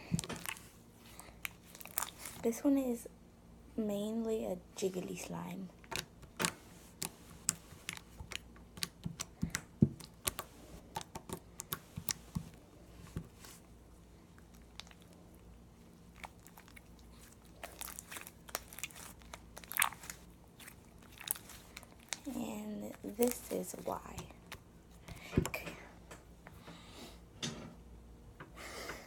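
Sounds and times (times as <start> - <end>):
slime squished by hand: 0.0 - 2.4, 5.9 - 13.6, 14.4 - 25.5.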